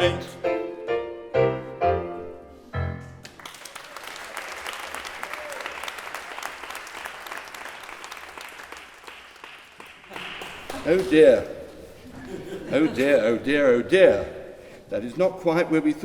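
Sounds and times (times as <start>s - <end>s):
audience applauding: 3.2s - 11.4s.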